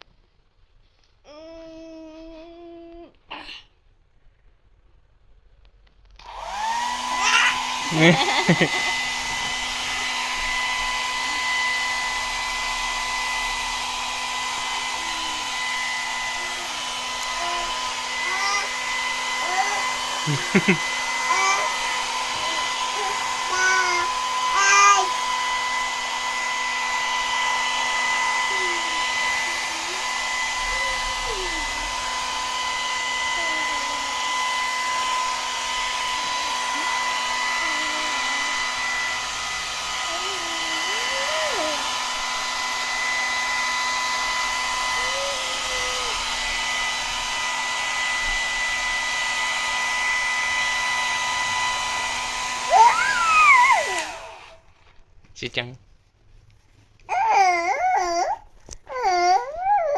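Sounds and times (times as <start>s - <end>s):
hair dryer blowing: 6.2s - 54.9s
baby squealing and cooing: 6.7s - 9.1s, 16.4s - 25.2s, 52.7s - 54.5s, 57.1s - 59.9s.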